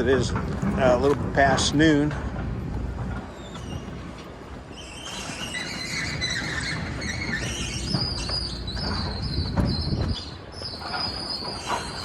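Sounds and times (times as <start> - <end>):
high-pitched metallic squealing: 4.7 - 12.0.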